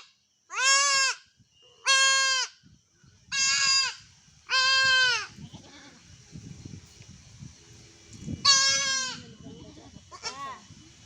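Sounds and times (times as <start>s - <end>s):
goat kid bleating: 0.5s - 1.2s, 1.8s - 2.5s, 3.3s - 6.0s, 8.4s - 10.6s.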